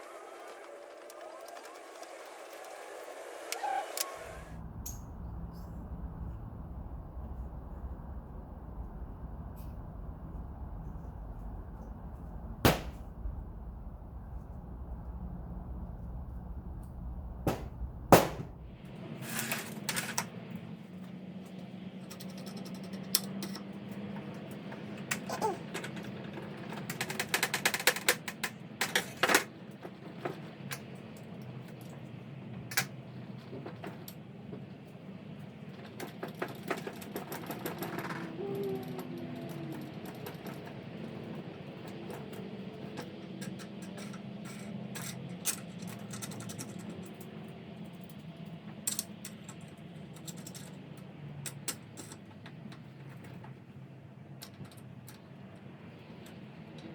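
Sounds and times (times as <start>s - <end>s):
low hum: 4.1s - 18.9s.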